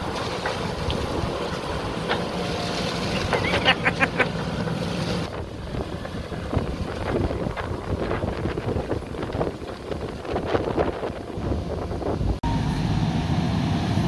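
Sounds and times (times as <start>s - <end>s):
wind buffeting microphone: 0.0s - 4.0s, 4.6s - 12.4s
diesel engine rumble: 0.0s - 14.0s.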